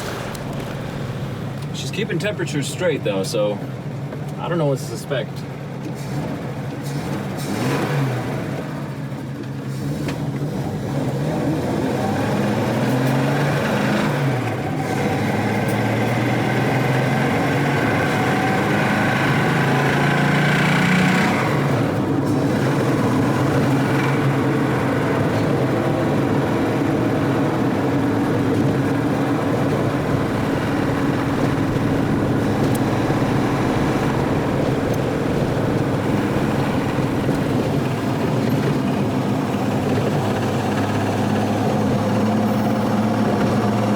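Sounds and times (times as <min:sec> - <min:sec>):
car engine revving: 0:00.0 - 0:04.6, 0:09.7 - 0:43.9.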